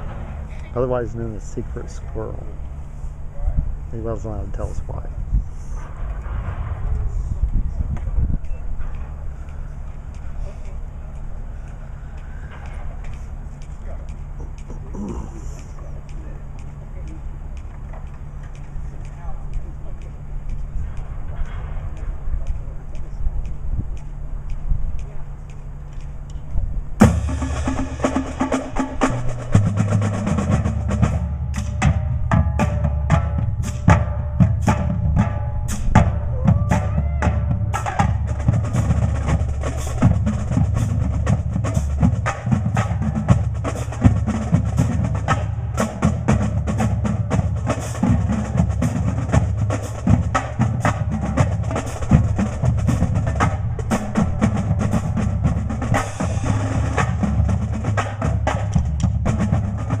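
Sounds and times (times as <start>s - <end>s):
low-pitched music: 6.3s - 60.0s
drums played fast: 27.0s - 60.0s.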